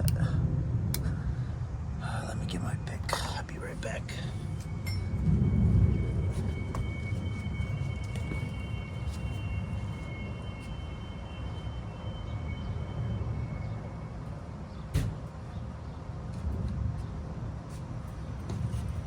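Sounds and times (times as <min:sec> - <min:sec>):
distant engine rumble: 0:00.0 - 0:10.7
faint high whine: 0:00.0 - 0:16.0.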